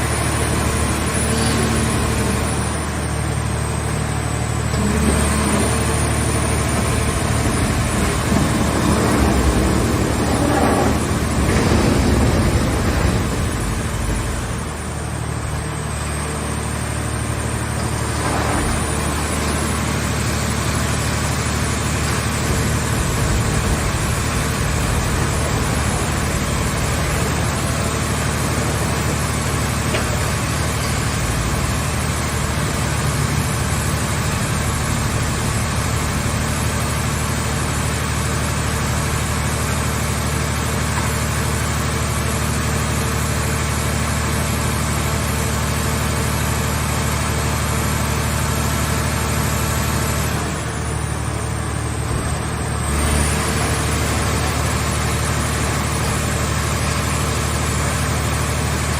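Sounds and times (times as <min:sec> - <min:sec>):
engine running steadily: 0:00.0 - 0:58.9.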